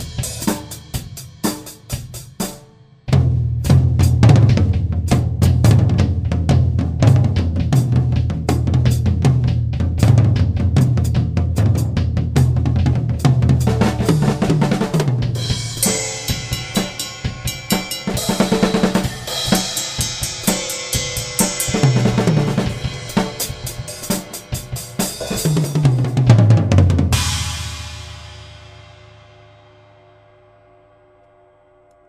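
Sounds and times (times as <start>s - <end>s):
drum kit playing: 0.0s - 30.0s
cymbal crash ringing: 15.4s - 25.8s.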